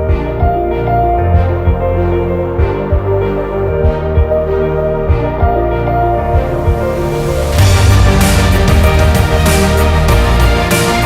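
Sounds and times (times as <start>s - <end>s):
background music with low beat: 0.0s - 11.0s.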